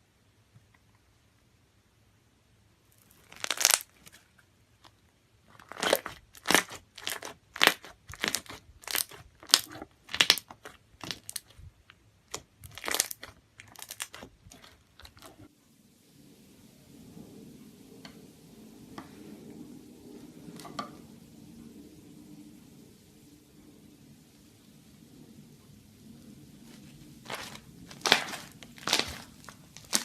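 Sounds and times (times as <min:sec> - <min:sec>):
slime squelching crunchily: 0:03.0 - 0:04.9, 0:05.5 - 0:15.5, 0:26.6 - 0:30.0.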